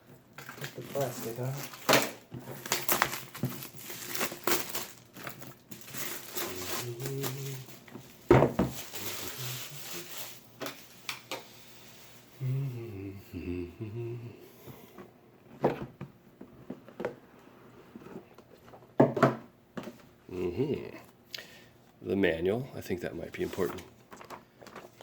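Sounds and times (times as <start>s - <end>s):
plastic wrap crinkling and tearing: 0.4s - 12.3s, 23.4s - 25.0s.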